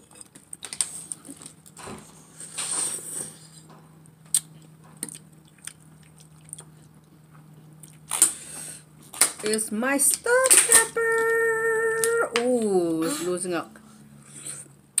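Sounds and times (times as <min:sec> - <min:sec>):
chewing and squishing food: 0:00.0 - 0:09.5
faint steady hum: 0:00.0 - 0:15.0.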